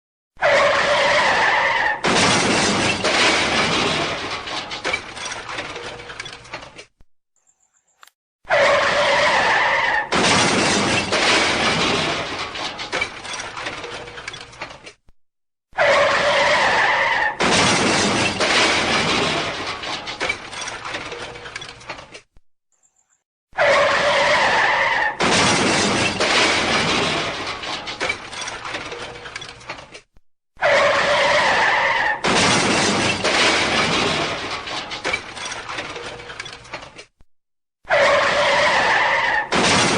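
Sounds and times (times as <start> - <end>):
car crash impact: 2.0 - 6.0, 10.1 - 13.8, 17.4 - 21.4, 25.2 - 29.1, 32.2 - 36.3, 39.5 - 39.9
breaking glass clattering: 2.0 - 6.8, 10.1 - 14.8, 17.4 - 22.1, 25.2 - 29.9, 32.2 - 37.0
scattering debris: 2.0 - 6.9, 10.1 - 15.0, 17.4 - 22.2, 25.2 - 30.1, 32.2 - 37.1, 39.5 - 39.9.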